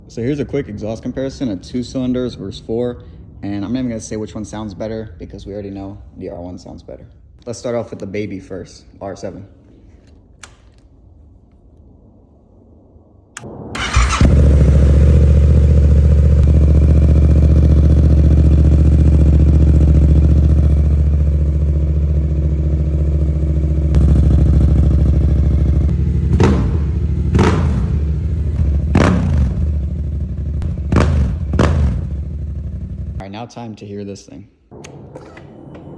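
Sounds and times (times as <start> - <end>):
motorcycle engine idling: 13.8 - 33.2
motorcycle engine revving: 13.8 - 33.2
motorcycle engine starting: 13.8 - 33.2.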